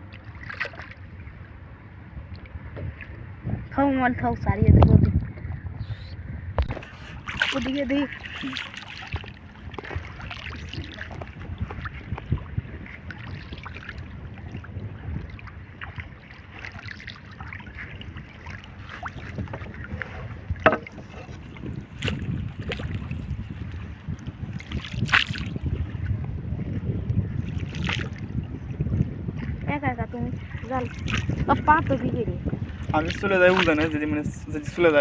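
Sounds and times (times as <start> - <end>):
water around boat: 0.0 - 35.0
wind on microphone: 0.0 - 35.0
sharp knocks: 20.6 - 21.1.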